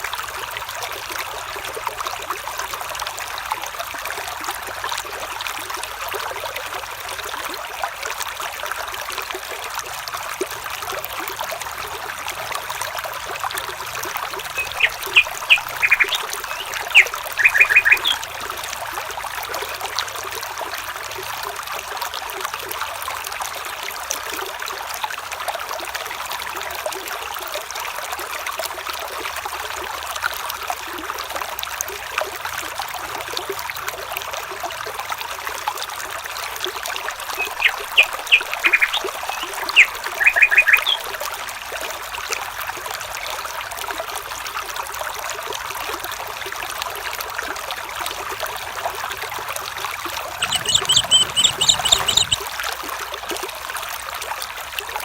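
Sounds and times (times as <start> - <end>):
stream babbling over stones: 0.0 - 55.0
animal short sharp calls: 50.4 - 52.4.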